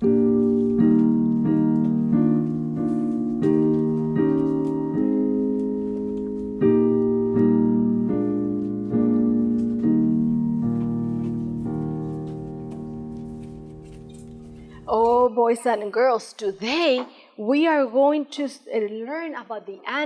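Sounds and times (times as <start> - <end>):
piano playing block chords: 0.0 - 15.3.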